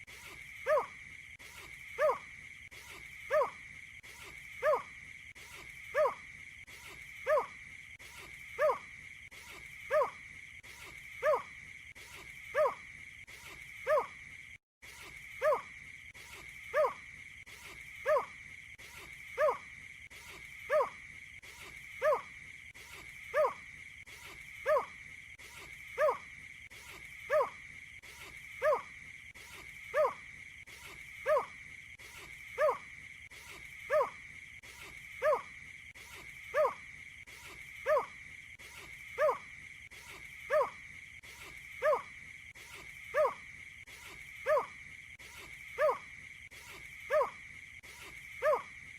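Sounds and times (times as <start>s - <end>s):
bird hoot-like call: 0.6s - 0.9s, 2.0s - 2.2s, 3.3s - 3.6s, 4.6s - 4.9s, 7.2s - 7.5s, 8.6s - 8.8s, 9.9s - 10.2s, 16.7s - 17.0s, 18.0s - 18.3s, 19.4s - 19.6s, 22.0s - 22.3s, 24.6s - 24.9s, 26.0s - 26.2s, 27.3s - 27.6s, 28.6s - 28.9s, 29.9s - 30.2s, 31.2s - 31.5s, 32.6s - 32.8s, 33.9s - 34.2s, 35.2s - 35.5s, 36.5s - 36.8s, 37.8s - 38.1s, 39.2s - 39.4s, 40.5s - 40.8s, 41.8s - 42.1s, 43.1s - 43.4s, 44.4s - 44.7s, 45.8s - 46.0s, 47.1s - 47.4s, 48.4s - 48.7s.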